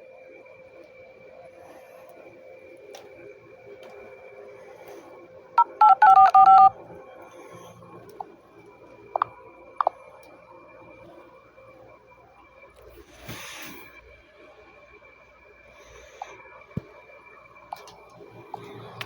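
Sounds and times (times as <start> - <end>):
faint steady hum: 0.0 - 19.0
phone keypad dialing tones: 5.6 - 6.8, 9.2 - 9.9.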